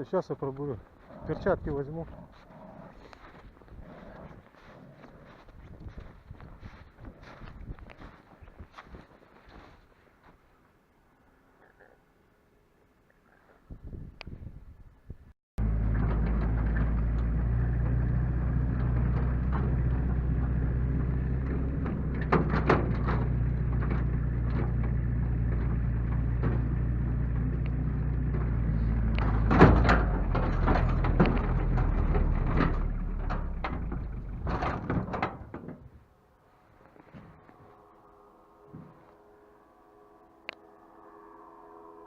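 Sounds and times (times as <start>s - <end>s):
engine running: 15.6s - 35.5s
sharp knocks and rattles: 15.6s - 35.9s.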